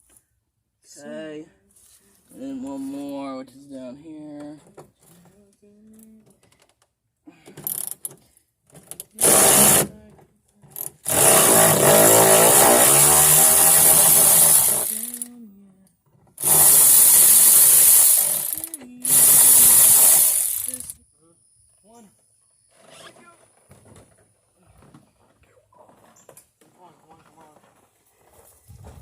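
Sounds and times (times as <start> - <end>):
power tool spinning bolts: 7.6 - 8.2, 8.8 - 9.9, 10.6 - 15.4, 16.4 - 21.0.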